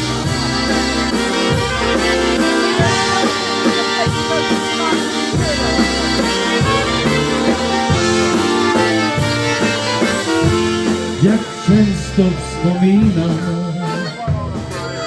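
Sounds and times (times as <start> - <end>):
accordion: 0.0 - 15.0
polka band playing: 0.0 - 15.0
steady drum beat: 0.0 - 15.0.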